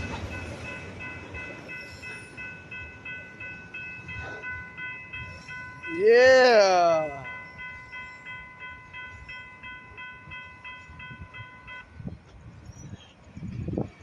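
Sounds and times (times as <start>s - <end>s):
railroad crossing bell ringing: 0.0s - 13.0s.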